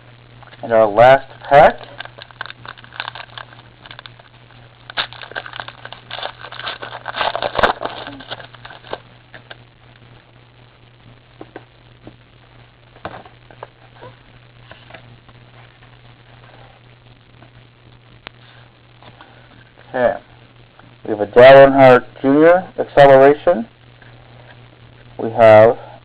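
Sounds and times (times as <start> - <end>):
steady low hum: 0.0 - 26.0
card pack wrapper crinkling: 1.5 - 9.6
cards rustling: 1.8 - 4.3, 4.9 - 9.6.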